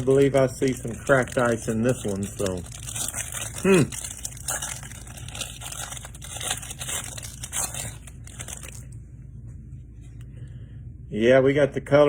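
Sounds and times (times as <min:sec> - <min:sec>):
cards rustling and clicking: 0:00.0 - 0:08.9
packaging crinkling and tearing: 0:00.0 - 0:09.0.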